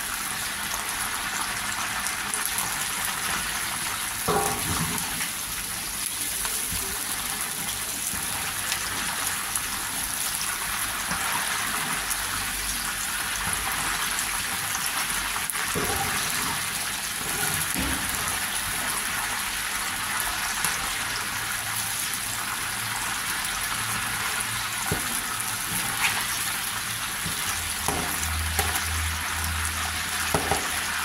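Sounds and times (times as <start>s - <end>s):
chicken deep-frying in oil: 0.0s - 31.0s.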